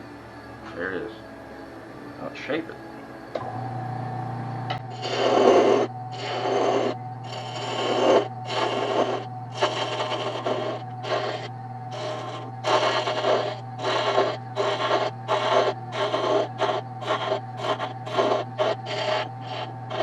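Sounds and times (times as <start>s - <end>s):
lathe motor humming: 0.0s - 20.0s
tool cutting spinning wood: 4.8s - 20.0s.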